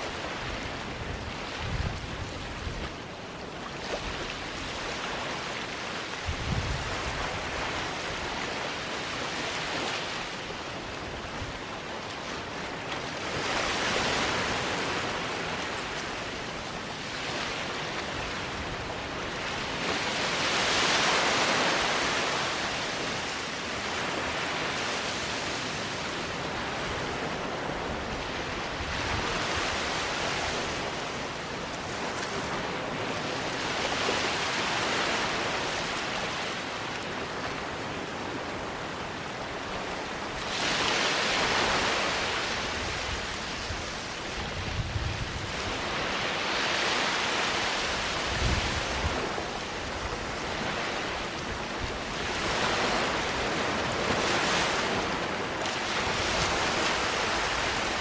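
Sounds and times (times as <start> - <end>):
small waves washing onto beach: 0.0 - 58.0.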